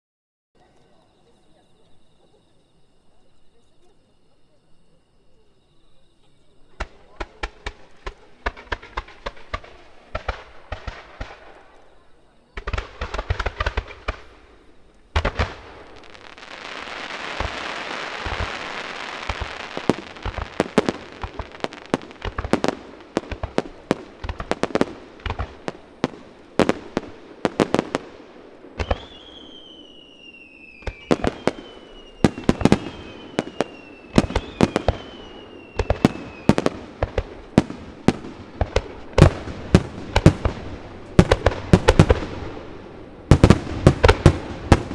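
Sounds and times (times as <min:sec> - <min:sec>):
falling fireworks whistles: 0:00.6 - 0:44.9
fireworks bangs: 0:06.2 - 0:44.9
fireworks hissing: 0:06.6 - 0:44.9.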